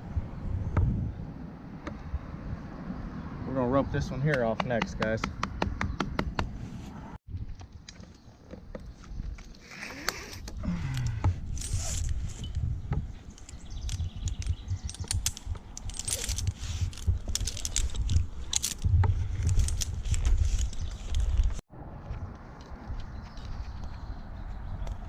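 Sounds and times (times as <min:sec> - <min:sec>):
metallic clicks and clinks: 0:13.2 - 0:21.2.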